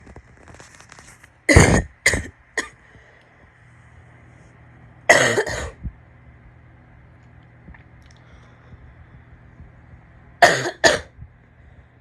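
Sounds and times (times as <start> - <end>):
woman coughing: 1.5 - 2.7, 5.1 - 5.8, 10.4 - 11.1.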